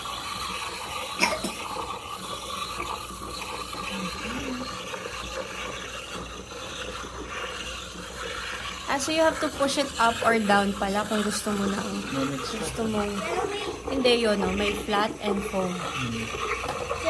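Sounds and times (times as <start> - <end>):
steam wand hissing: 0.0 - 17.0.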